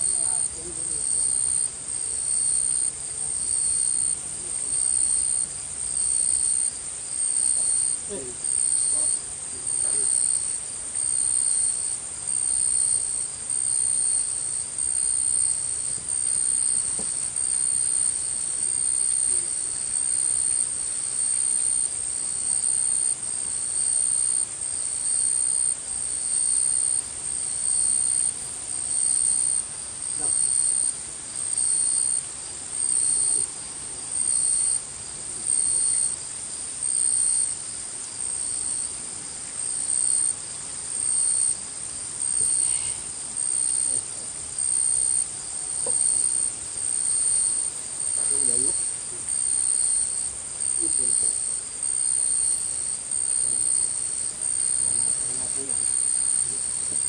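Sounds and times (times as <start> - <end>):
insect shrill pulsing buzz: 42.2 - 57.0.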